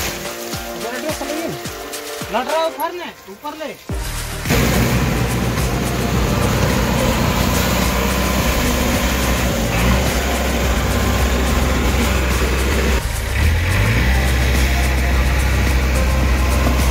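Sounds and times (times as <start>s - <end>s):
diesel engine running steadily: 4.1s - 16.9s.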